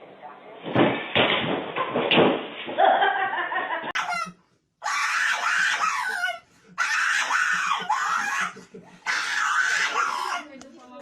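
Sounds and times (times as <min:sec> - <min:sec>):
high-pitched shrieking cries: 0:04.0 - 0:10.5.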